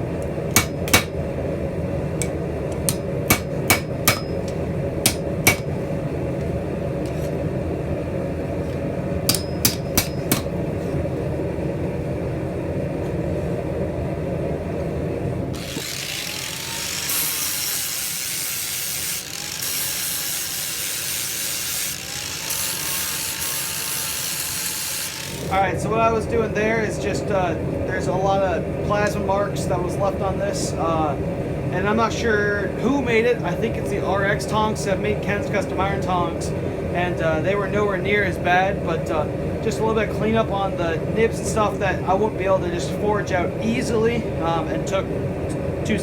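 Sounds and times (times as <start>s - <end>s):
hammer blows on steel: 2.2s - 5.8s
grinder grinding steel: 15.5s - 25.6s.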